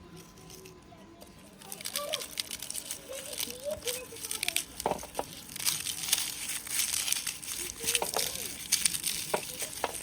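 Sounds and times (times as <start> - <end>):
papery or plastic crinkling: 0.0 - 10.0.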